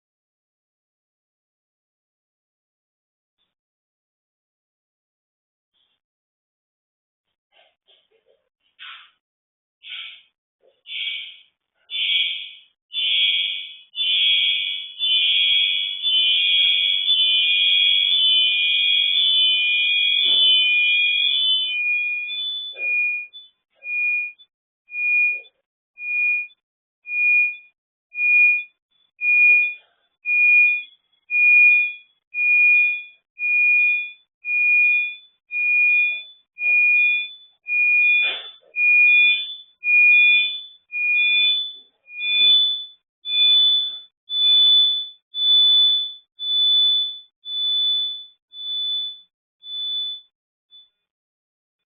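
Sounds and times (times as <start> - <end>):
electronic alarm beeping: 10.9 - 51.0.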